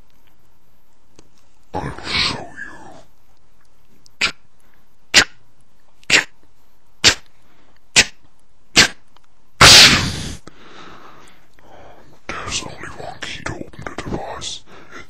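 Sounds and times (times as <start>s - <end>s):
harsh burst of noise: 9.6s - 10.4s.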